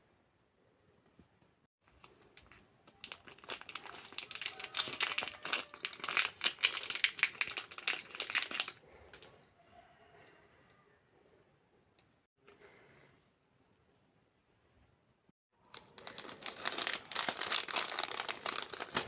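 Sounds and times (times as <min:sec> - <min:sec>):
packaging crinkling: 0:02.4 - 0:08.8, 0:15.6 - 0:19.0.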